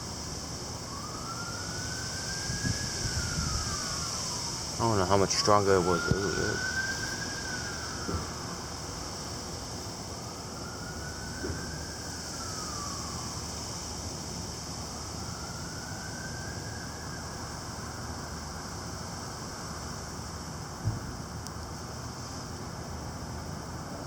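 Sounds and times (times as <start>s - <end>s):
heavy rain hissing: 0.0s - 24.0s
emergency siren wailing: 0.8s - 13.7s, 14.8s - 18.8s
gusty wind: 2.0s - 9.0s.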